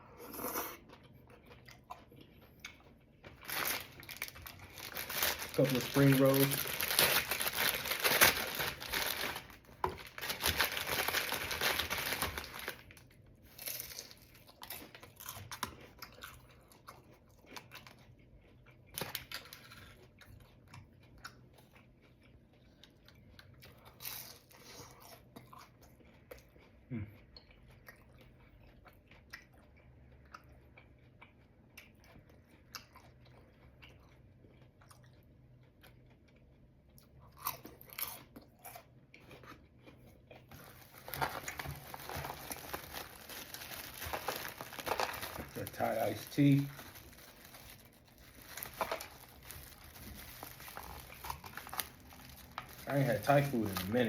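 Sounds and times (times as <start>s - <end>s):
person chewing crunchy food: 0.0s - 54.0s
packaging crinkling: 3.3s - 13.0s, 40.5s - 54.0s.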